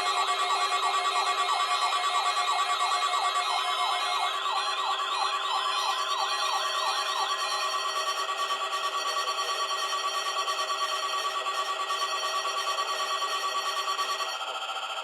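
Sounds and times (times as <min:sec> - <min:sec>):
warbling alert siren: 0:00.2 - 0:07.4.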